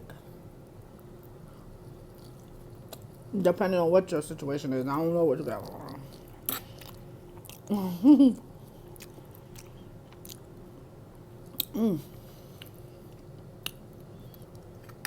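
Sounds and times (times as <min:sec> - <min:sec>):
mouth chewing clicks and smacks: 0:05.6 - 0:07.7, 0:08.9 - 0:10.4
person humming mm: 0:11.6 - 0:12.2.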